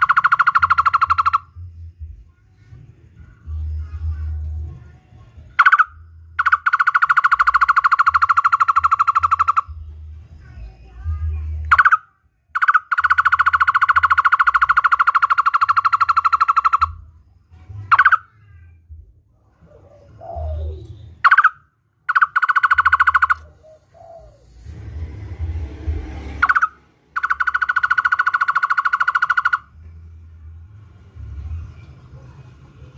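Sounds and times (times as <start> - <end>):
bird trilling: 0.0 - 1.6, 5.5 - 17.1, 17.8 - 18.5, 19.6 - 24.8, 26.4 - 29.9.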